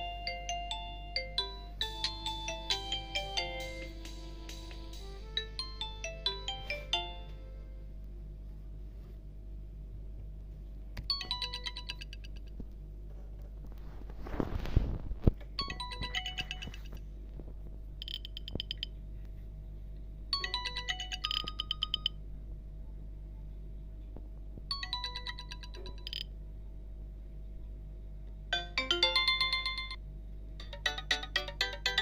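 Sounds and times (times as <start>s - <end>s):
electronic beep ringtone: 15.6s - 16.9s.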